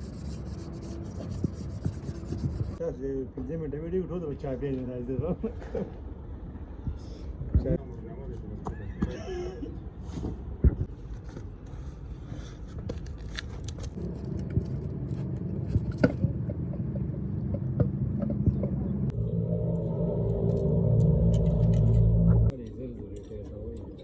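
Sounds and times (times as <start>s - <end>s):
metallic clicks and scrapes: 11.1s - 18.8s, 19.7s - 24.0s
machine low rumble: 14.0s - 22.5s.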